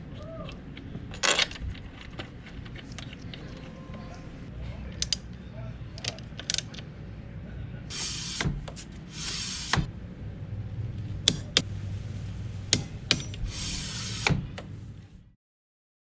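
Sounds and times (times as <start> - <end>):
steady low hum: 0.0 - 15.4
metallic clicks and knocks: 6.0 - 6.9, 11.2 - 11.7, 12.7 - 13.4
short bursts of hiss: 7.9 - 8.5, 9.1 - 9.9, 13.5 - 14.4.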